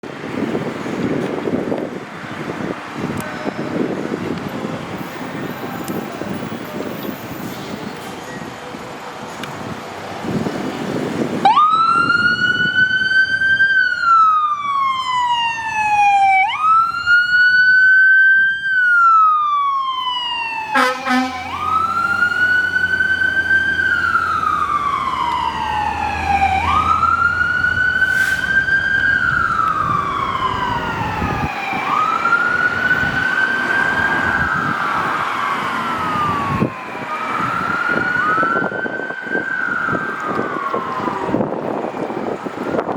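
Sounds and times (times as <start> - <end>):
fire engine siren wailing: 2.3 - 7.8, 9.5 - 42.9
harsh buzzing horn blast: 20.7 - 21.6.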